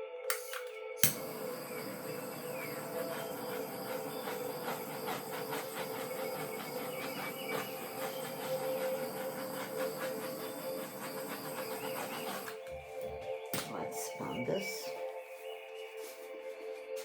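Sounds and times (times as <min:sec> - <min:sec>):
butane torch clicking alight: 0:00.3 - 0:12.7
hissing torch flame: 0:00.3 - 0:12.7.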